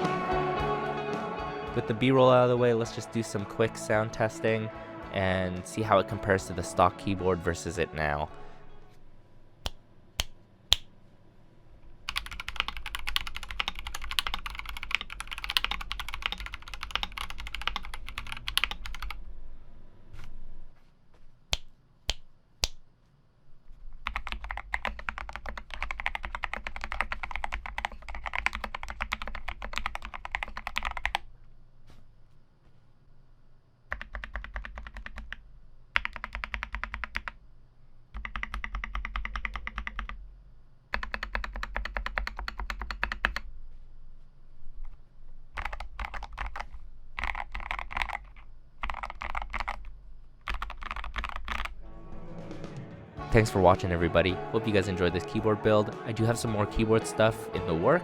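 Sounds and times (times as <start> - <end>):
fast typing on mechanical keyboard: 12.1 - 19.2, 24.0 - 31.2, 33.9 - 35.4, 36.0 - 37.4, 38.2 - 40.2, 40.9 - 43.5, 45.5 - 51.8.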